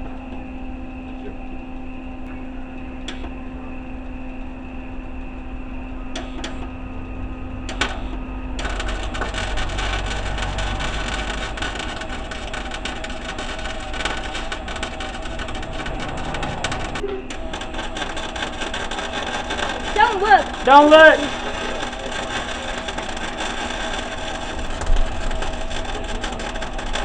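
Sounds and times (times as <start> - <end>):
arc welding crackling: 5.7 - 27.0.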